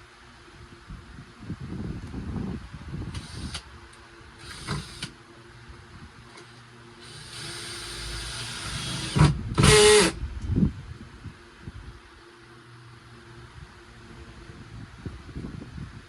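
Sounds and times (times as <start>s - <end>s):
small electric motor whirring: 3.1s - 3.6s, 4.4s - 5.2s, 7.0s - 10.2s.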